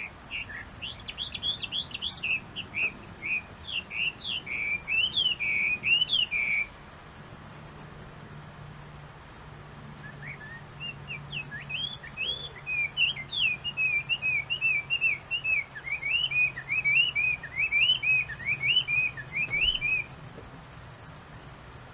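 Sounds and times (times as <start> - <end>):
bird singing whistled notes: 0.0 - 6.8, 10.0 - 20.2.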